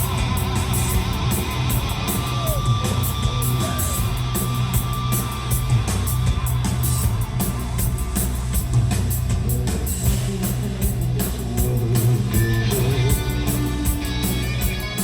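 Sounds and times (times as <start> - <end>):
electric guitar: 0.0 - 8.3, 11.6 - 15.0
bass guitar: 0.0 - 15.0
drums and cymbals: 0.0 - 15.0.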